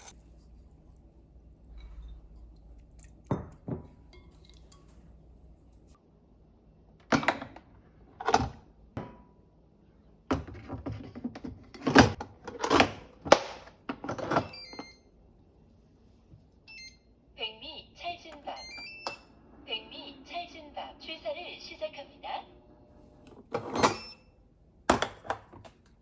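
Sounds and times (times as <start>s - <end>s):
dishes and utensils clinking: 1.7s - 6.0s.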